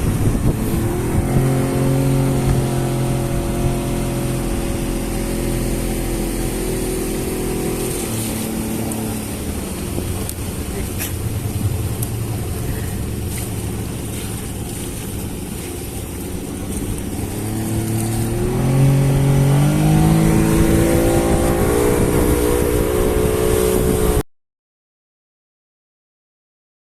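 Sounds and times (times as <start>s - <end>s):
boat engine running: 0.0s - 24.2s.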